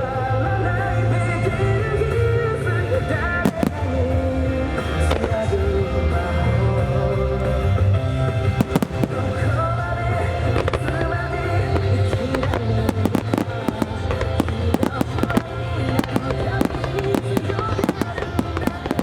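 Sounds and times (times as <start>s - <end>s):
music soundtrack: 0.0s - 19.0s
fireworks bursting and crackling: 3.2s - 5.6s, 8.3s - 19.0s.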